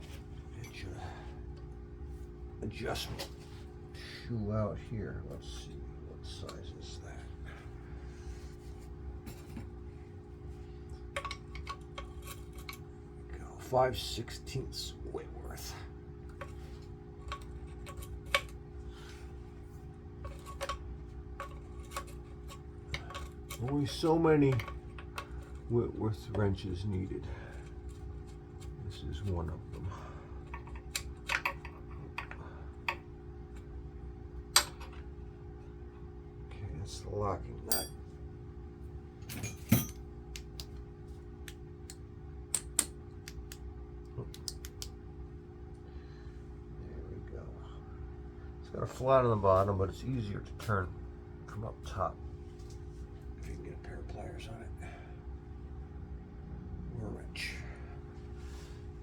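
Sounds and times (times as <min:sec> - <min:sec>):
low electrical hum: 0:00.0 - 0:59.0
hand tools clinking: 0:37.7 - 0:37.9.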